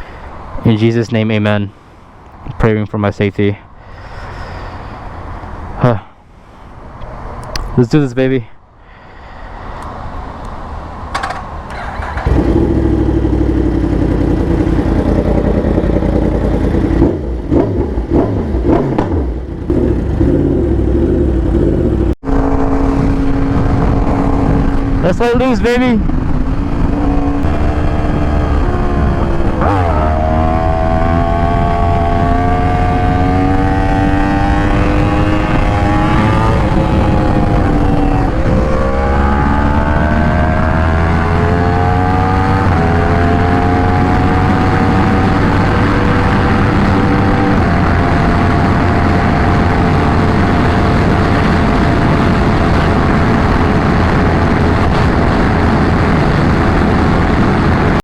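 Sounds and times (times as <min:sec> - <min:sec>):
wind rumble on microphone: 0:09.0 - 0:58.0
motorcycle engine revving through gears: 0:11.1 - 0:25.0, 0:26.0 - 0:58.0.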